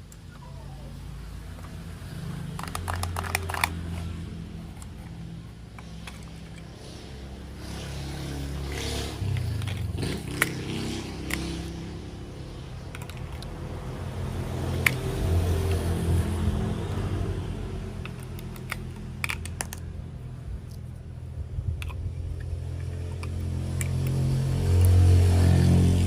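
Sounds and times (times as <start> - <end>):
plastic toy parts clicking: 2.6 - 6.7, 9.3 - 10.6, 12.8 - 13.6, 18.0 - 19.9, 21.8 - 25.0.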